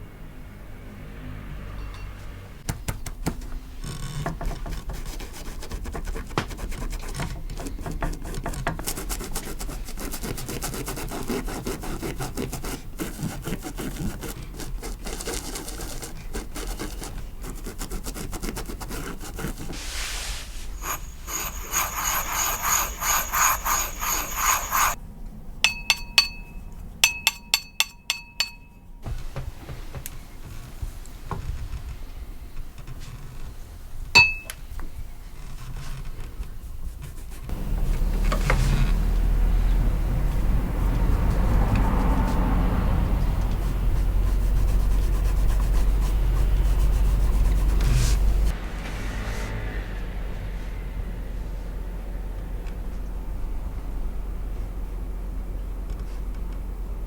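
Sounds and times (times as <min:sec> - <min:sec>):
hand tools scraping material: 0:03.8 - 0:25.0
light metallic clinks: 0:25.7 - 0:28.8, 0:34.2 - 0:34.6.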